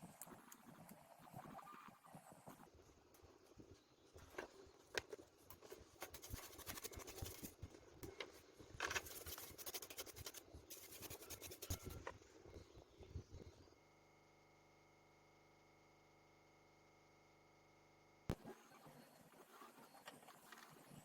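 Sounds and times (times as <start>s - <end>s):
scraping on plastic part: 8.8s - 12.1s.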